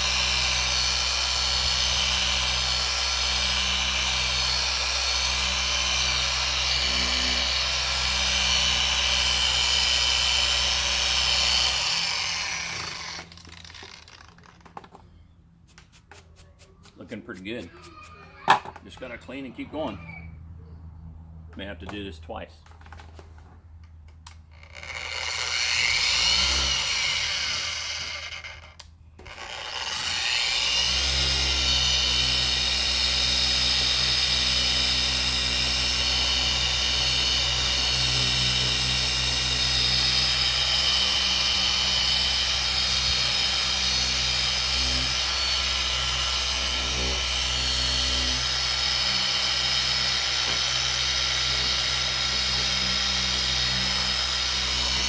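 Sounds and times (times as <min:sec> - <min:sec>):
power polisher spinning: 0:00.0 - 0:15.0, 0:24.5 - 0:55.0.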